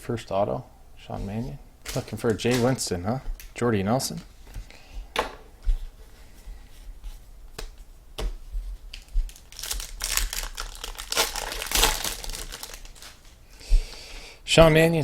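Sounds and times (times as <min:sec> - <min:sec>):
foil wrapper crinkling and tearing: 0:08.9 - 0:13.4.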